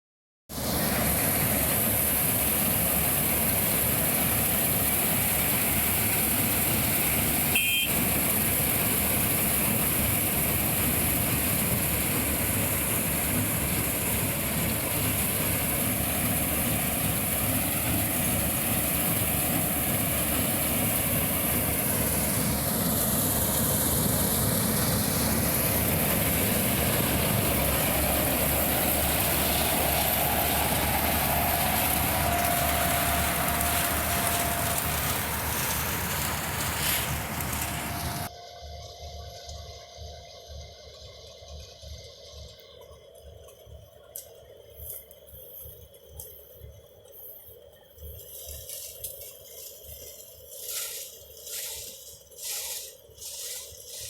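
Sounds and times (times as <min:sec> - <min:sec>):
combine harvester engine running: 0:00.5 - 0:40.1, 0:47.0 - 0:54.0.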